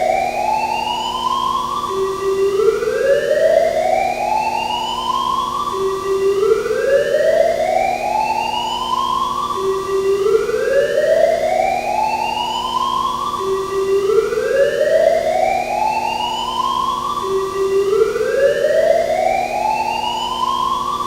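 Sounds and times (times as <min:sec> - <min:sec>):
fire alarm rising tone: 0:00.0 - 0:21.0.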